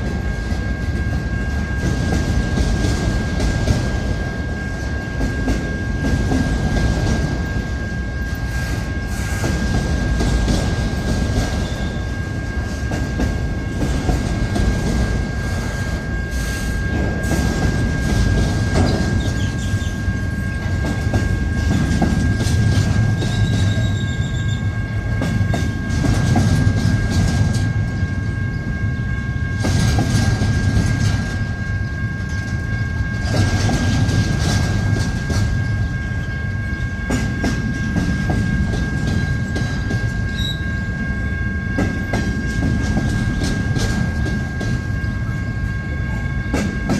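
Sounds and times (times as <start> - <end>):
freight train rumbling past: 0.0 - 46.9
wheels clicking over rail joints: 29.6 - 41.1, 41.7 - 45.6.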